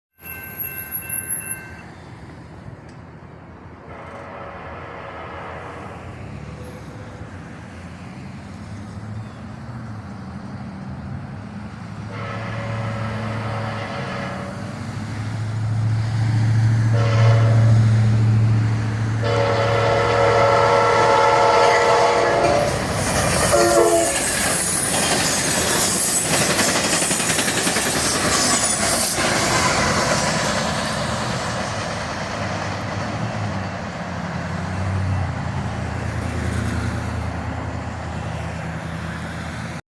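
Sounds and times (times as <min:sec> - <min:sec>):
wheel and rail noise: 0:00.2 - 0:39.8
locomotive air horn blasts: 0:03.9 - 0:06.2, 0:12.1 - 0:14.9, 0:16.9 - 0:17.9, 0:19.2 - 0:24.4.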